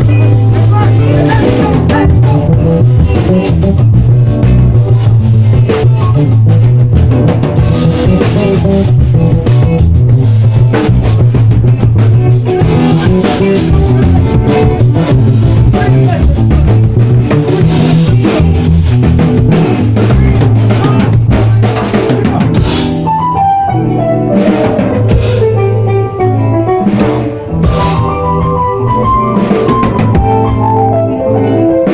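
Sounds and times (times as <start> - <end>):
bass guitar: 0.0 - 31.9
drum kit beat: 0.0 - 31.9
electric guitar: 0.0 - 31.9.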